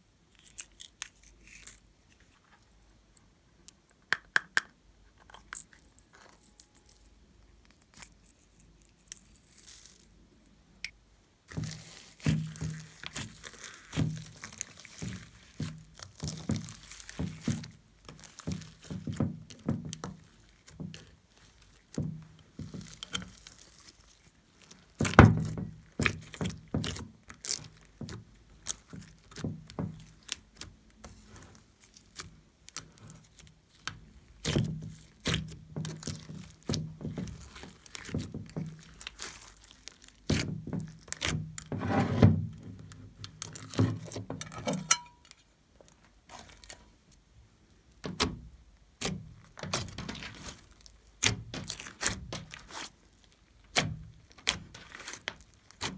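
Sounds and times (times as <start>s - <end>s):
slime squishing and popping: 11.6s - 22.0s, 31.3s - 41.6s, 49.0s - 55.9s.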